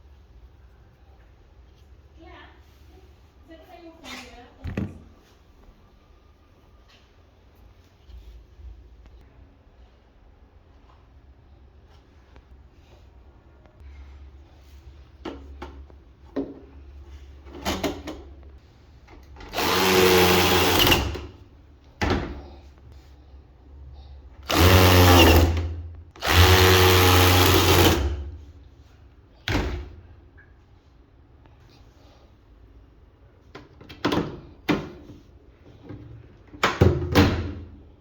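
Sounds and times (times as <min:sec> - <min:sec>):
power drill motor whine: 0:19.5 - 0:21.1, 0:24.5 - 0:25.6, 0:26.2 - 0:28.1.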